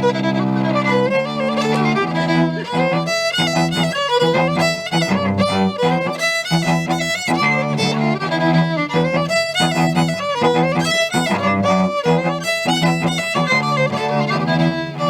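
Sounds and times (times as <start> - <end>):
fiddle playing folk tune: 0.0 - 15.0.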